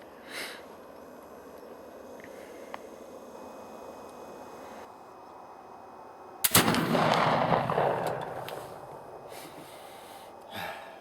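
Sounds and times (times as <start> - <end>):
rifle shot with rolling boom: 6.4 - 9.3.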